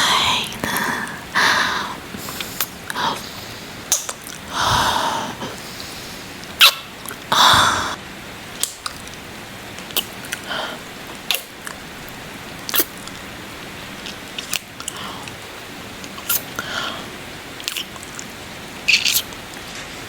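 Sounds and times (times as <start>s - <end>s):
rain hiss: 0.0s - 20.0s
breathy exhale: 4.5s - 6.4s, 16.6s - 17.1s
wet kissing smacks: 18.9s - 19.4s.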